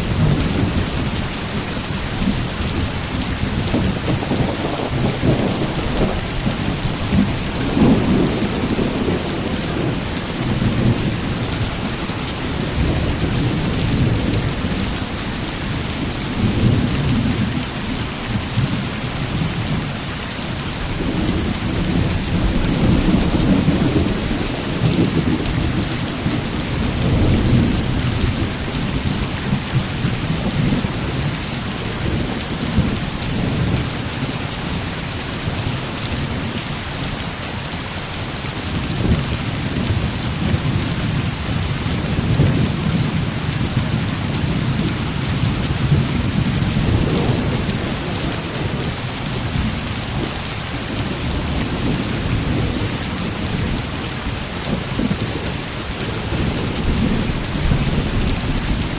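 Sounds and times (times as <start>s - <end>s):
heavy rain falling: 0.0s - 58.9s
thunder rolling: 3.5s - 11.9s.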